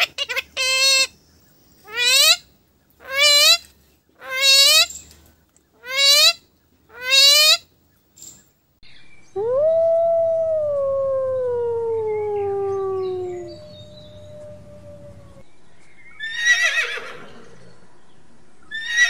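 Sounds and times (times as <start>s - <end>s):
dog howling: 9.4s - 15.4s.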